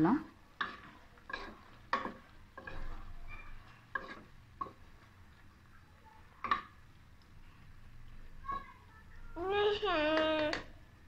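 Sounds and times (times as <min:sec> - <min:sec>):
metal spoon scraping pot: 0:00.6 - 0:04.8.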